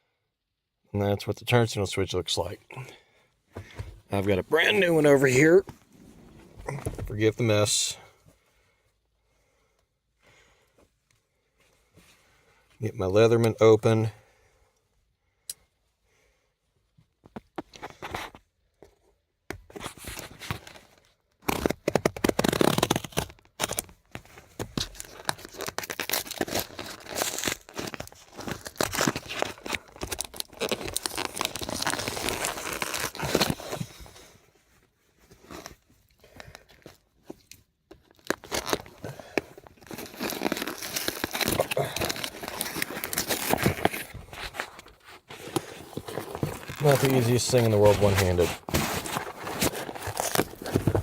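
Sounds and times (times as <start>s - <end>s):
packaging crinkling and tearing: 21.4s - 23.9s, 24.8s - 34.0s, 38.0s - 51.0s.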